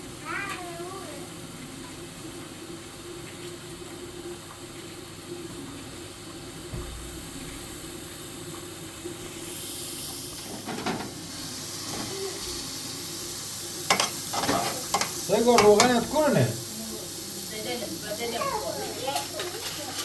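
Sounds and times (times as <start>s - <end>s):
food sizzling in a pan: 0.0s - 20.0s.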